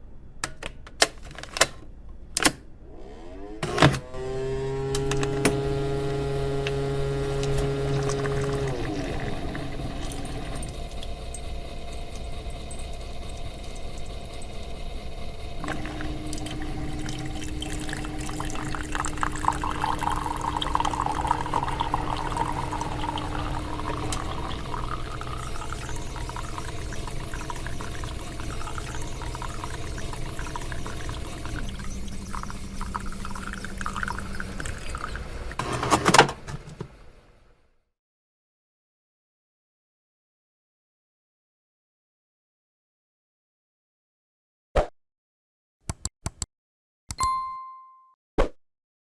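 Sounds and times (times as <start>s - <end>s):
coffee machine pump humming: 2.9s - 37.1s
coffee pouring into cup: 5.1s - 36.8s
coffee machine clack: 7.4s - 37.0s.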